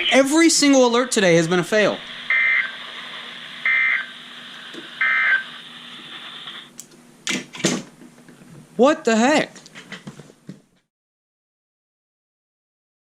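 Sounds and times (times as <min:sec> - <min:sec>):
steady radio hiss: 0:00.0 - 0:07.8
two-tone digital data bursts: 0:02.3 - 0:02.8, 0:03.6 - 0:04.2, 0:05.0 - 0:05.5.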